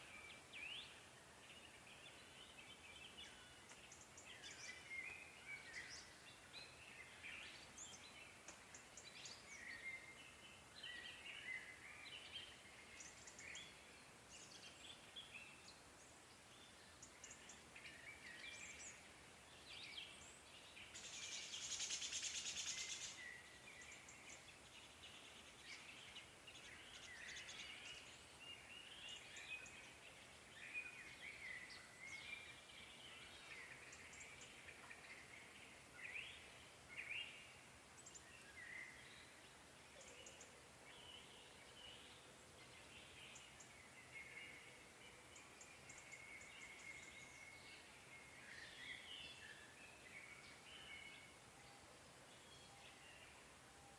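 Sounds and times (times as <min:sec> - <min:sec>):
birds chirping and singing: 0:16.5 - 0:37.4.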